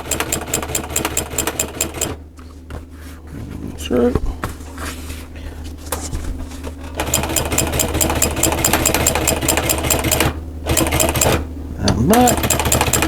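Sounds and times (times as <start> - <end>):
sewing machine motor humming: 0.0 - 2.2, 6.8 - 13.0
sewing machine rapid stitching: 0.0 - 2.2, 7.0 - 11.5, 12.1 - 13.0.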